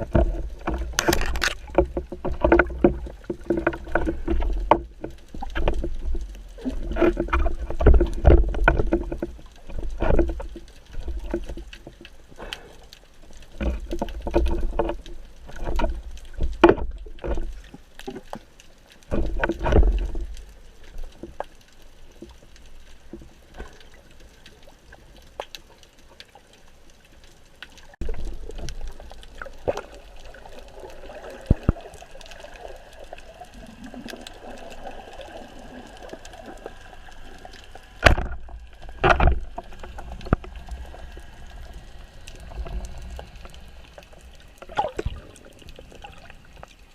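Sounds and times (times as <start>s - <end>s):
clicks and knocks: 0.0s - 6.2s
water sloshing and gurgling: 0.0s - 46.9s.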